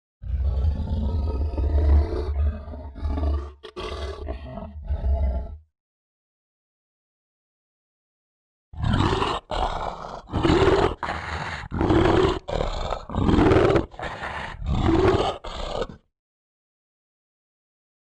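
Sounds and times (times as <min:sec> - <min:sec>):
animal roars: 0:00.2 - 0:05.7, 0:08.8 - 0:16.1.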